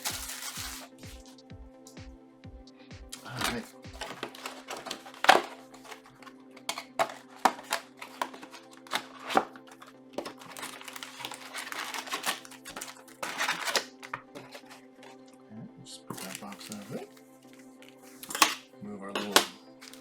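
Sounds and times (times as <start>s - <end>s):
plastic wrap crackling: 0.0s - 1.1s, 3.2s - 15.1s, 16.1s - 17.2s, 19.2s - 20.0s
background music: 0.0s - 20.0s.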